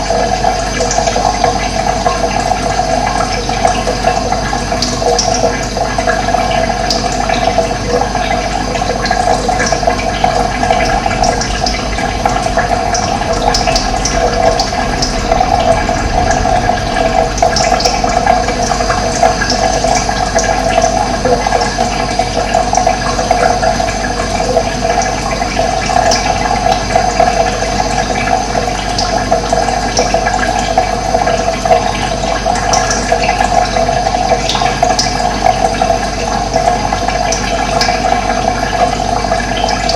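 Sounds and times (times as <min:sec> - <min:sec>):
water rushing: 0:06.7 - 0:33.8.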